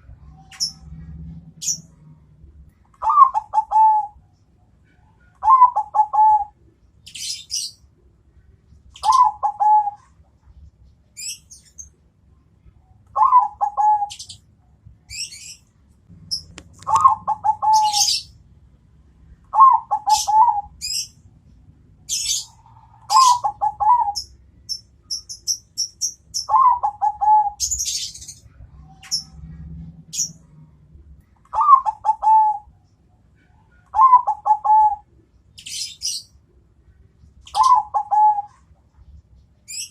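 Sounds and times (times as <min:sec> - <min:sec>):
small birds chirping: 0:00.0 - 0:18.5, 0:19.2 - 0:39.9
dove cooing: 0:03.0 - 0:04.2, 0:05.2 - 0:06.6, 0:09.0 - 0:10.2, 0:13.2 - 0:14.4, 0:16.3 - 0:18.3, 0:19.5 - 0:21.1, 0:22.1 - 0:24.3, 0:26.4 - 0:30.4, 0:31.5 - 0:32.7, 0:33.8 - 0:36.2, 0:37.5 - 0:38.7.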